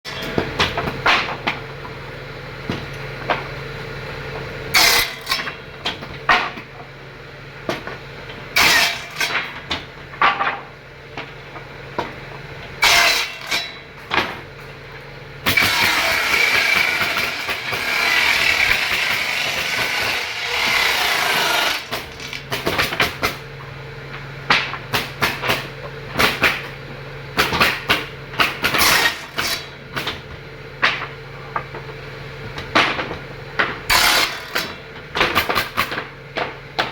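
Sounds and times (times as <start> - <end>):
woodworking machinery humming: 14.7 - 29.9, 33.2 - 36.9.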